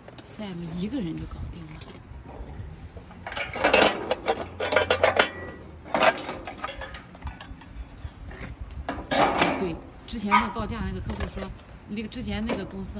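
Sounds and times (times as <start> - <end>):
metal items clinking: 3.2 - 7.9.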